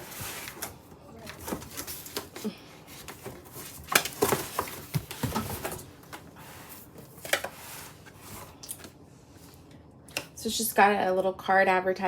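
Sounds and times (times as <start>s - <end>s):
cardboard and paper rustling: 0.0s - 8.9s.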